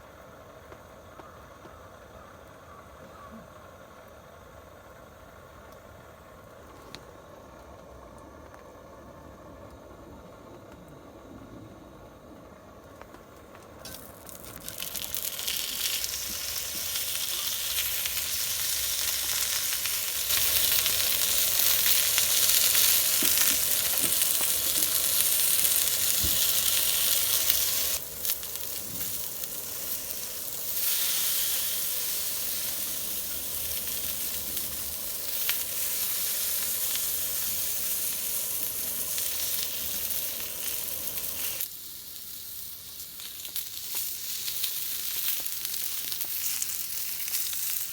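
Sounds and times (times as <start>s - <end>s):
food sizzling in a hot pan: 13.8s - 47.9s.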